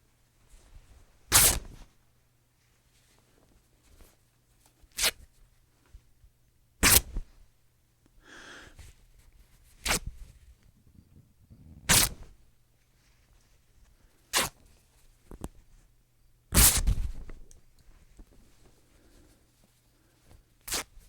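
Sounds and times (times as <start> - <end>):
soft fabric rustle: 0.0 - 6.2, 8.7 - 16.0, 16.9 - 21.0
fabric ripping: 9.8 - 10.1, 11.7 - 12.3, 14.3 - 14.6, 20.7 - 21.0.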